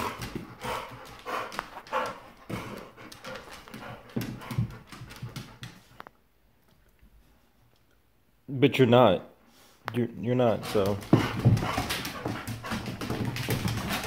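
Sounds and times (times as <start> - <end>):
dogs panting: 0.0 - 6.2, 10.5 - 14.0
dog claws clicking on floor: 0.0 - 6.9, 10.6 - 14.0.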